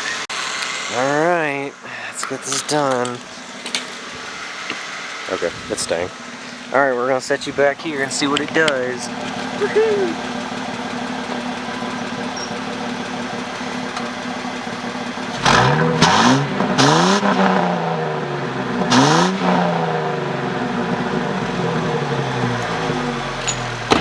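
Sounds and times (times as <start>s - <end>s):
engine ticking: 0.9s - 24.0s
car engine idling and revving: 2.7s - 24.0s.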